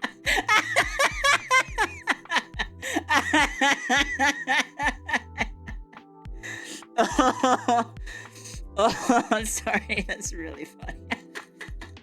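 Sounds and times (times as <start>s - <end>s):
woman laughing hard: 0.0s - 5.5s, 6.6s - 7.9s, 8.8s - 10.0s, 10.8s - 11.9s
quiet background music: 0.0s - 12.0s.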